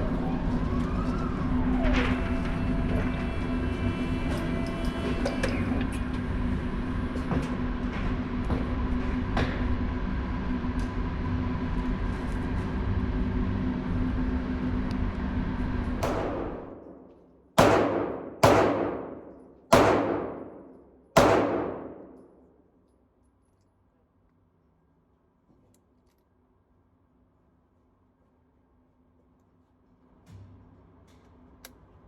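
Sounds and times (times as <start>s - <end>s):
low rumbling hum: 0.0s - 22.6s.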